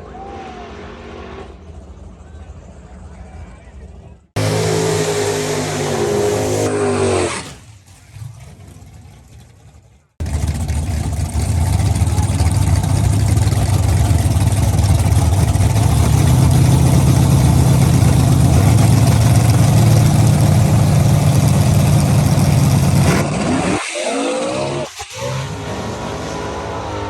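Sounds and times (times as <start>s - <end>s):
car engine running: 4.2s - 6.8s, 7.7s - 23.4s.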